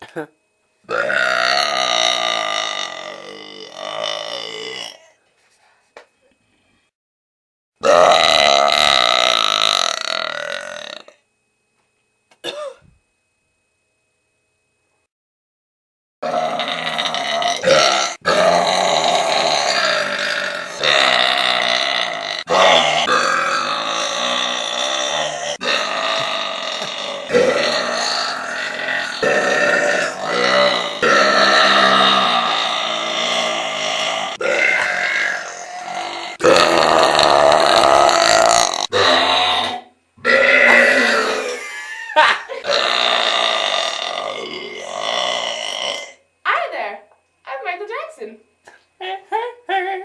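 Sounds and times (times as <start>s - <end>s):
girl burping loudly: 0.9s - 5.1s, 7.8s - 11.2s, 16.2s - 46.2s.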